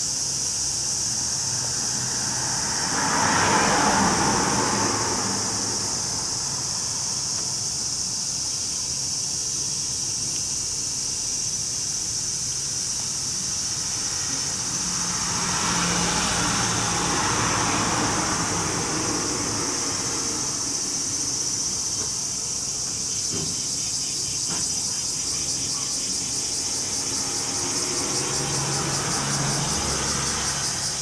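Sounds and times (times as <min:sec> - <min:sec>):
insect chorus trilling: 0:00.0 - 0:31.0.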